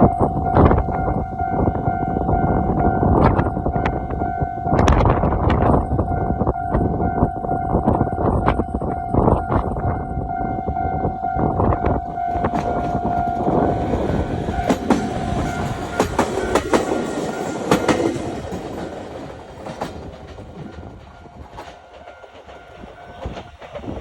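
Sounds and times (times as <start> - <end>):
level crossing alarm bell: 5.7 - 19.1
train wheels clicking over rail joints: 11.8 - 24.0.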